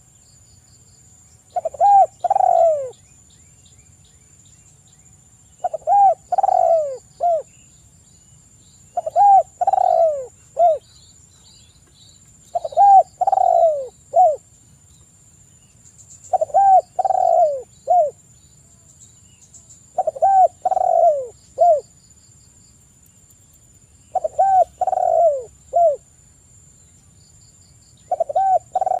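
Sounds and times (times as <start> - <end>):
dove cooing: 1.5 - 3.0, 5.6 - 7.5, 9.0 - 10.8, 12.5 - 14.4, 16.3 - 18.2, 19.9 - 21.9, 24.1 - 26.0, 28.1 - 29.0.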